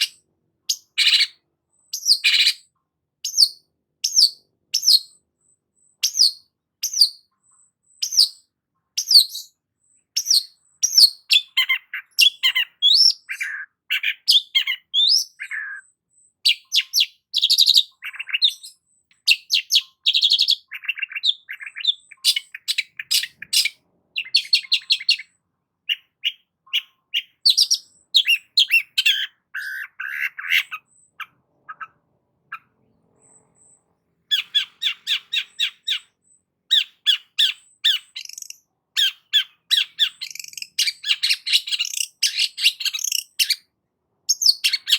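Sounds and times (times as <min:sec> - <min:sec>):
bird singing varied song: 0:00.0 - 0:44.9.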